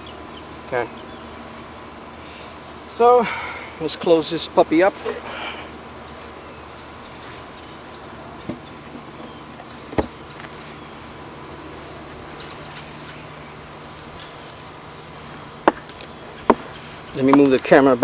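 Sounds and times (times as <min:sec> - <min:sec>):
honeybees humming: 0:00.0 - 0:18.0
wooden hive parts knocking: 0:08.4 - 0:10.6, 0:14.1 - 0:18.0.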